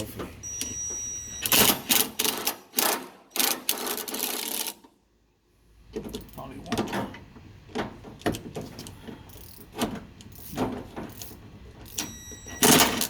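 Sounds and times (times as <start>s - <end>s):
ratchet wrench clicking: 9.3s - 12.0s.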